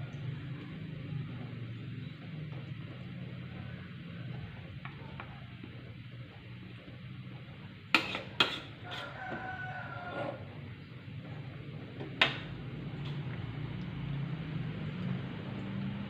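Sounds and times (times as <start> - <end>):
metal utensil clanking on pot: 7.9 - 9.2.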